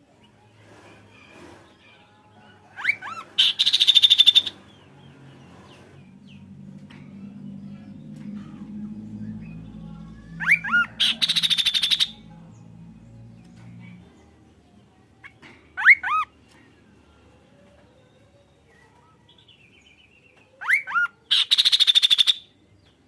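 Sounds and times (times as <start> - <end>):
bird whistling and trilling: 2.8 - 4.6, 10.4 - 12.2, 15.8 - 16.3, 20.6 - 22.5
faint low hum: 4.1 - 20.7.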